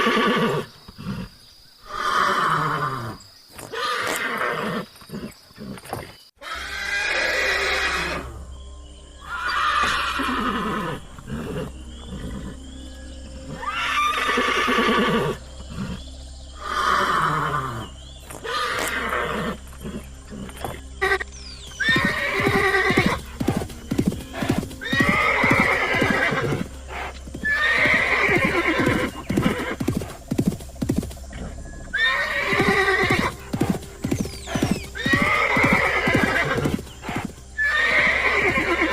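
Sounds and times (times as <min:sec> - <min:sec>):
horse whinnying: 0:00.0 - 0:01.3, 0:01.9 - 0:08.4, 0:09.2 - 0:12.6, 0:13.5 - 0:16.0, 0:18.4 - 0:21.2, 0:21.8 - 0:30.1, 0:31.4 - 0:38.9
hooves clip-clopping: 0:19.6 - 0:38.9.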